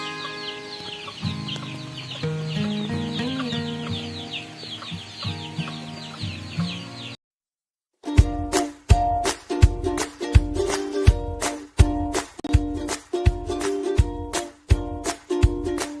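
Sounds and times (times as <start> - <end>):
background music: 0.0 - 7.1, 8.0 - 16.0
chickens peeping and clucking: 0.0 - 7.2.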